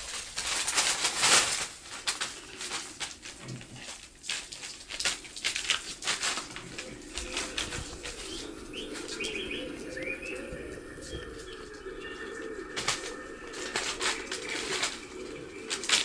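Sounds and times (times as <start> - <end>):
pigeons cooing: 2.1 - 16.0
pigeon wing flaps: 12.2 - 16.0.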